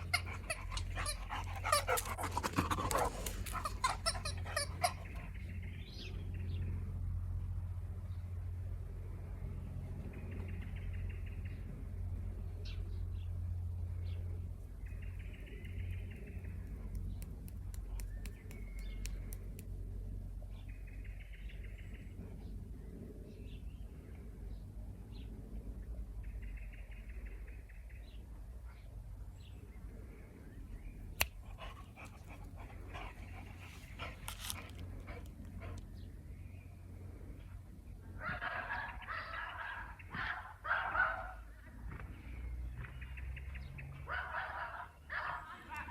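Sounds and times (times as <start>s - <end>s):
squeaky ball squeaking: 3.5s - 5.1s.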